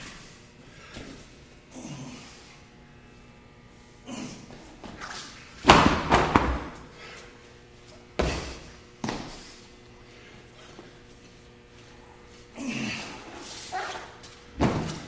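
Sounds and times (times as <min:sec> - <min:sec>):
heavy thuds of equipment on floor: 0:05.6 - 0:06.8, 0:14.6 - 0:15.0.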